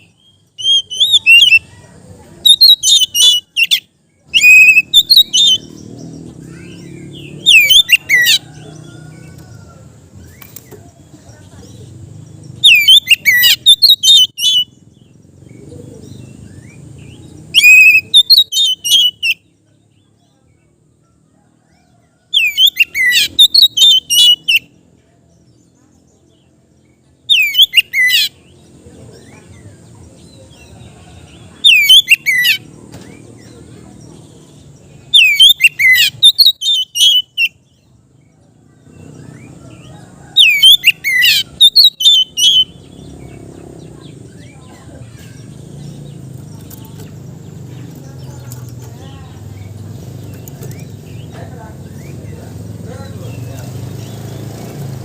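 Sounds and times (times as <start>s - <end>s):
bird singing whistled song: 0.0s - 1.7s, 2.4s - 8.5s, 12.6s - 14.8s, 16.1s - 19.4s, 22.4s - 24.7s, 27.3s - 28.4s, 31.6s - 32.6s, 35.1s - 37.9s, 39.2s - 43.5s.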